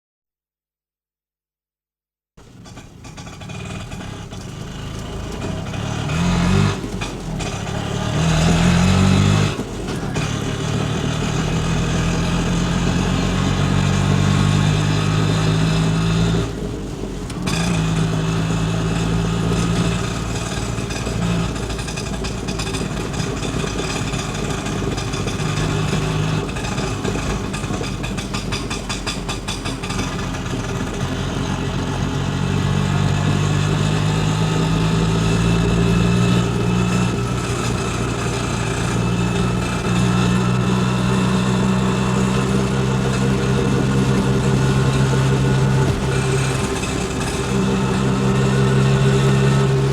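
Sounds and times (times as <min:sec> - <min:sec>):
auto rickshaw engine revving: 0:02.4 - 0:49.9.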